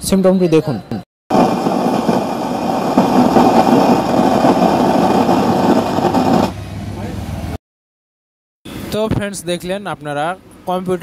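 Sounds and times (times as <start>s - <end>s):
speaker harsh noise: 1.3s - 6.6s.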